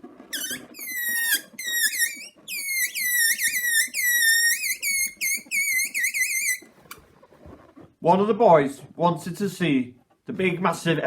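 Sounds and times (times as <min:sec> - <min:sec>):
balloon squeaking: 0:00.0 - 0:07.1.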